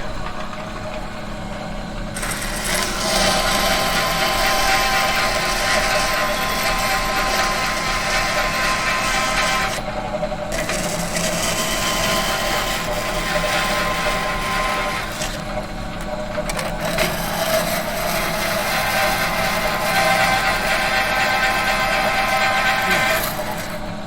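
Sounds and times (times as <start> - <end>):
metal machine humming and rattling: 0.0 - 24.0.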